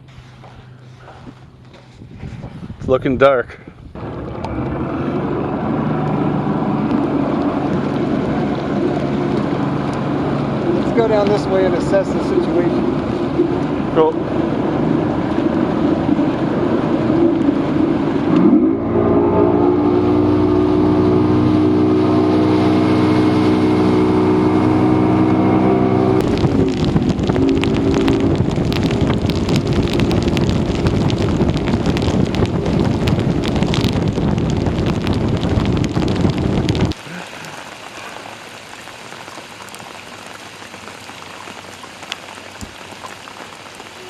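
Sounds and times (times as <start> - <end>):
wind on microphone: 1.0 - 37.0
outboard motor droning: 4.0 - 33.9.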